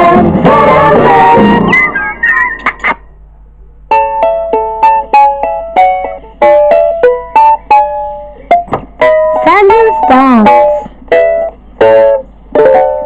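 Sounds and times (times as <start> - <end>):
plucked string melody: 3.9 - 13.0.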